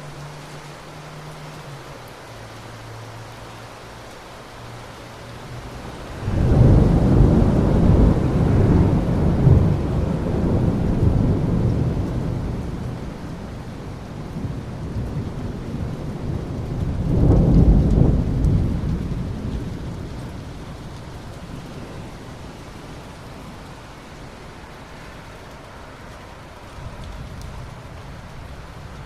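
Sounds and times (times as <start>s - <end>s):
steady rain: 0.0s - 29.0s
thunder rumbling: 5.6s - 23.6s.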